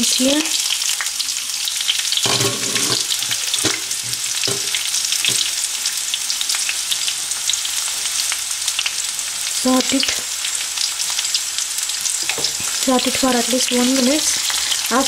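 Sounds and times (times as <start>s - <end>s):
onions sizzling in hot oil: 0.0s - 15.0s
spatula scraping pan: 2.2s - 5.6s.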